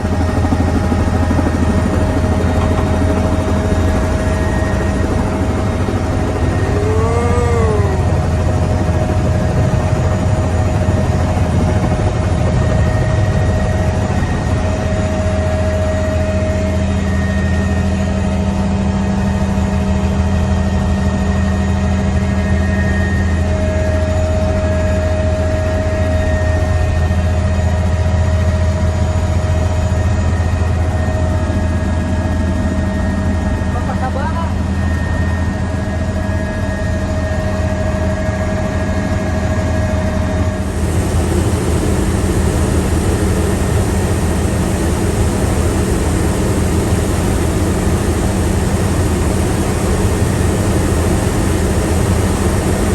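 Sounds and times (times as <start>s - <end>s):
high whine: 0.0s - 10.7s, 40.4s - 52.9s
helicopter engine and rotor drone: 0.0s - 52.9s.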